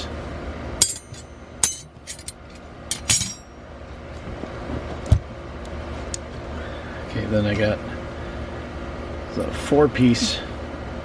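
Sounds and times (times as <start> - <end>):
steel wrenches clinking: 0.8 - 3.5.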